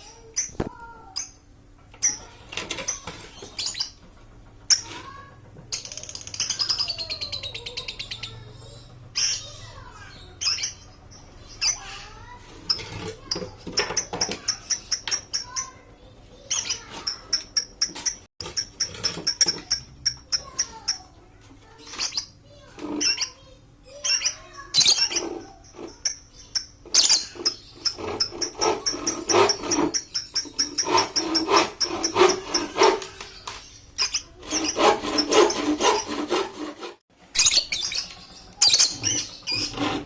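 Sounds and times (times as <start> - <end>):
lovebirds chirping: 5.8 - 12.8, 37.4 - 39.9
buzzy bird trill: 5.8 - 13.4, 21.8 - 35.6, 37.3 - 39.8.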